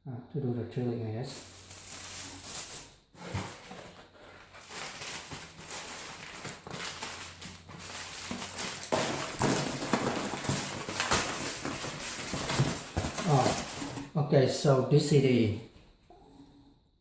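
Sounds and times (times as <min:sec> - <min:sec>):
packing material rustling: 0:01.3 - 0:14.2.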